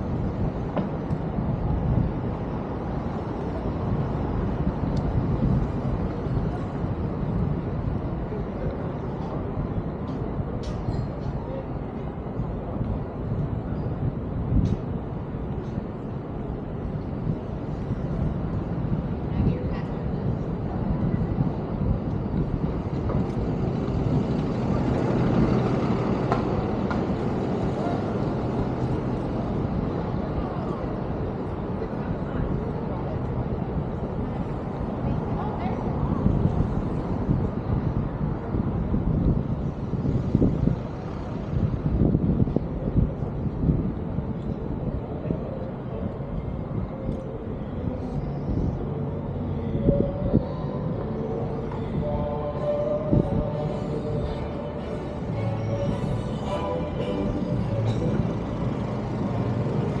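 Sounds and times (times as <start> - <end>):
low rumble of street traffic: 0.0 - 60.0.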